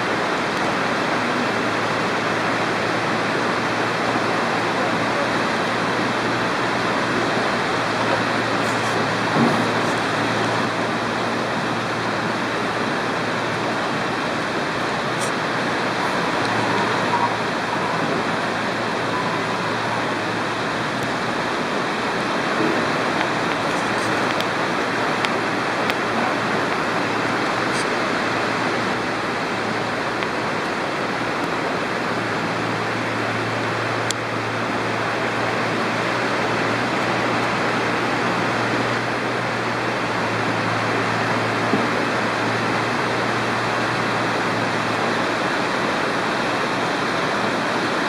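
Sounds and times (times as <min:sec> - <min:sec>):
waterfall pouring: 0:00.0 - 0:48.0.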